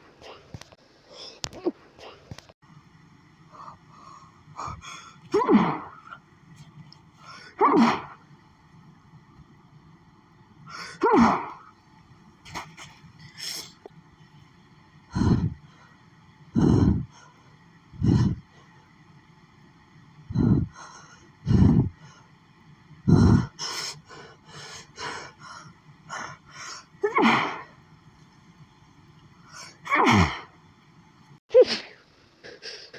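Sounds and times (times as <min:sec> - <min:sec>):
gasping breaths: 0:15.1 - 0:17.4, 0:18.0 - 0:18.7, 0:20.3 - 0:22.3, 0:23.1 - 0:27.0
woman sneezing: 0:31.5 - 0:32.0.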